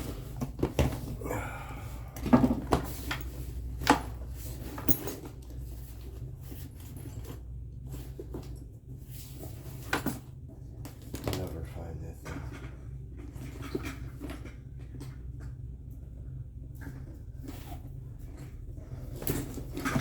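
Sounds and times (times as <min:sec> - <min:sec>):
steady low hum: 0:00.0 - 0:09.8
tools and metal parts clicking: 0:04.6 - 0:05.4.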